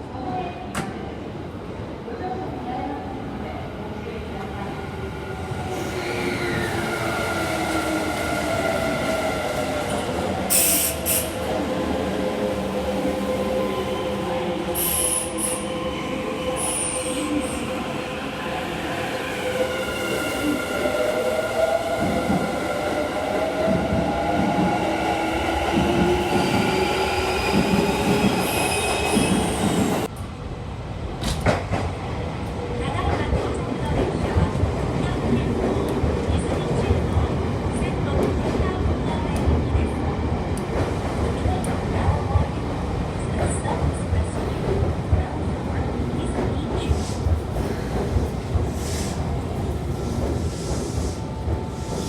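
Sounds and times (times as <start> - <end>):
train rolling rumble: 20.9 - 52.0
train wheels squealing: 26.3 - 30.1.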